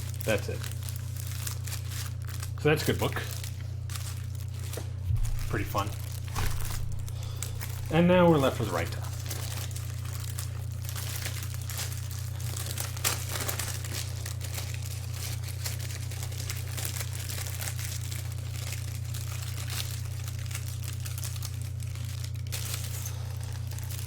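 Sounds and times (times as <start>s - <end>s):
low hum: 0.0s - 18.7s
plastic wrapping crinkling: 0.0s - 24.0s.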